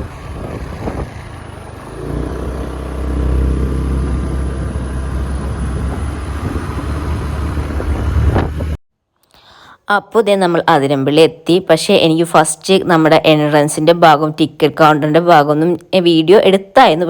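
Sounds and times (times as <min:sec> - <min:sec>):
motorcycle engine: 0:00.0 - 0:08.8
road rumble: 0:00.0 - 0:08.8
wind noise: 0:00.0 - 0:08.8.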